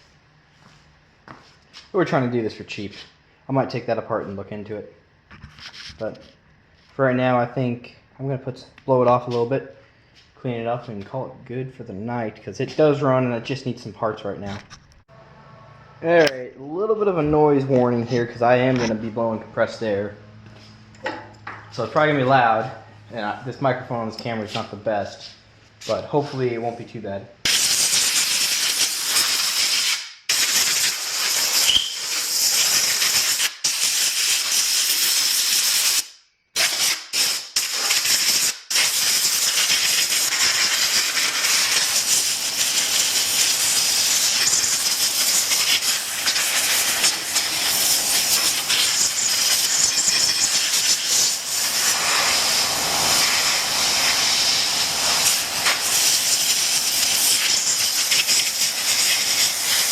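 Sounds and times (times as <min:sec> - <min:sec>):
compressed air blow gun hissing: 0:27.5 - 0:59.9.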